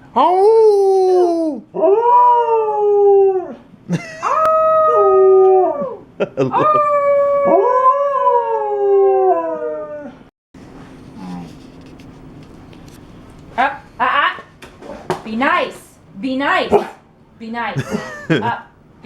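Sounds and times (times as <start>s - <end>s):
wolf dog howling: 0.2s - 3.6s, 4.2s - 10.2s.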